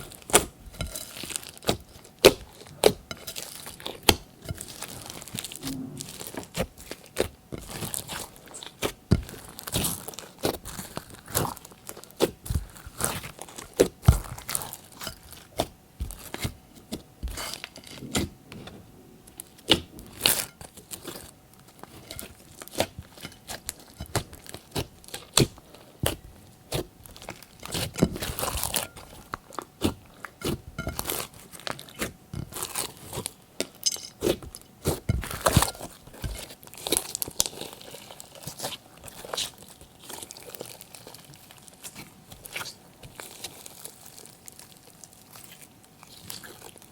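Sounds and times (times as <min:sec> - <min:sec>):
slime kneaded popping and crackling: 0:06.2 - 0:17.0, 0:34.2 - 0:46.9.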